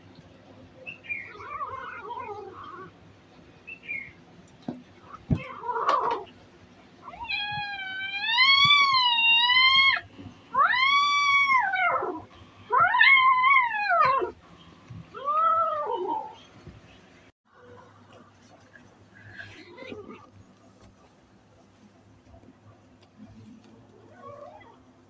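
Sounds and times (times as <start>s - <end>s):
kitten yowling: 7.1s - 10.0s, 10.6s - 14.4s.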